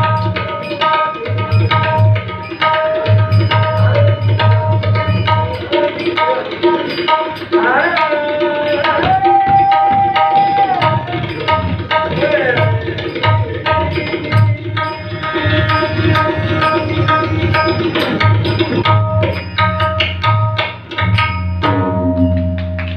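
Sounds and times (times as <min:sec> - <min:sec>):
tabla rhythm: 0:00.0 - 0:22.9
steady drone: 0:14.3 - 0:18.9.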